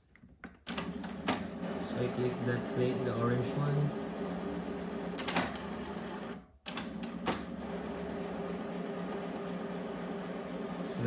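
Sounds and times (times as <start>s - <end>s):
printer mechanism whirring: 0.7s - 11.0s.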